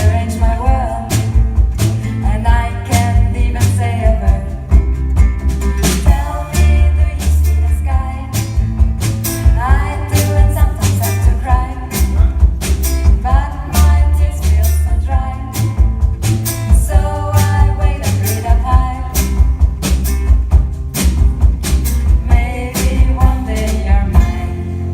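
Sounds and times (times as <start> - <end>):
band playing a song: 0.0 - 24.9
heavy bass: 0.0 - 24.9
steady drum beat: 0.0 - 24.9
person singing: 13.2 - 15.7, 16.8 - 19.4, 22.2 - 24.9.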